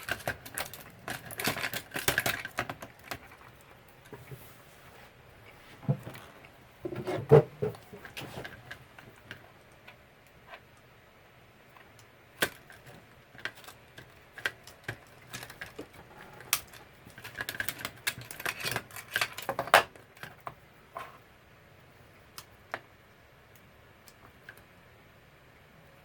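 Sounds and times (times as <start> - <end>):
small hard parts clicking and clattering: 0.0 - 4.2, 11.7 - 21.2.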